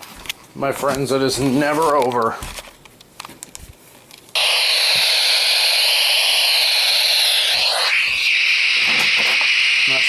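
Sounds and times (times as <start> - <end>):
radio static hiss: 4.4 - 10.0.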